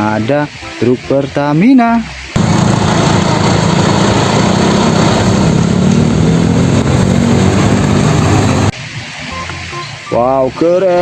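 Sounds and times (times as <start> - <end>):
truck engine running: 2.4 - 8.7.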